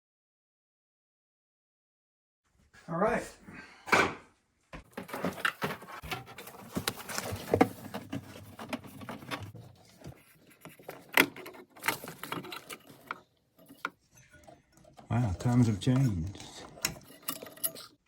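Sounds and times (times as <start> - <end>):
hands handling small parts: 4.9 - 18.0.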